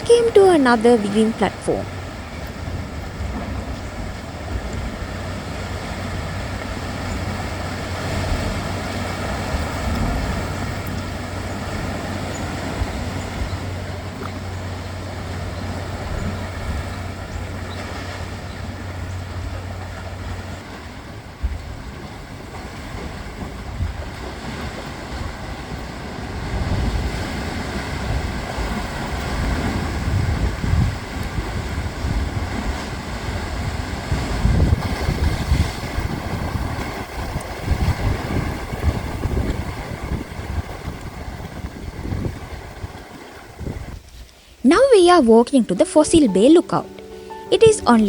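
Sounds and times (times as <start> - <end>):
sea surging in a blowhole: 1.6 - 44.7
wind on microphone: 22.8 - 44.3.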